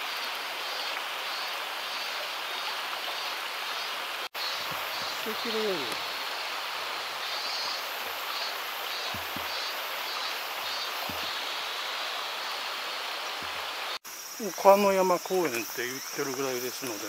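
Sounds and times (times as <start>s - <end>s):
running water rushing: 0.0s - 17.0s
soft low thumps: 9.1s - 9.6s.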